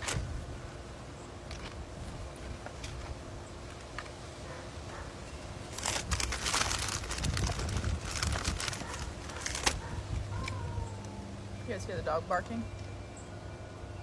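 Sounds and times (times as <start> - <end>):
food packaging crinkling: 5.6 - 10.6
sharp packaging crack: 5.7 - 10.6.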